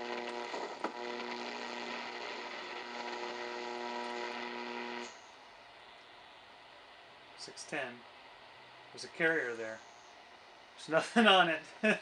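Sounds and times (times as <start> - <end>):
radio receiver low buzz: 0.0 - 7.3
static hiss: 0.0 - 12.0.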